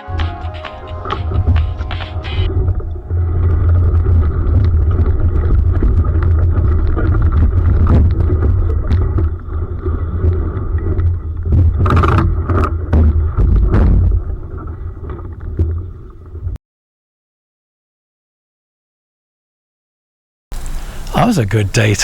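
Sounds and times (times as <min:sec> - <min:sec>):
water sloshing: 0:00.0 - 0:16.6
wind rumble on microphone: 0:00.0 - 0:16.6.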